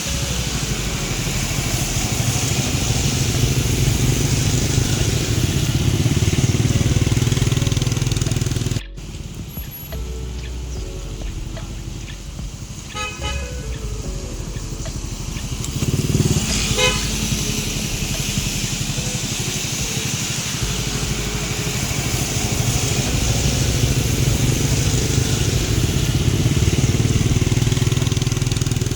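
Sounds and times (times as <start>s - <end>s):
passing vehicle engines: 0.0s - 28.9s
rain hiss: 0.0s - 28.9s
car horn: 12.7s - 20.0s.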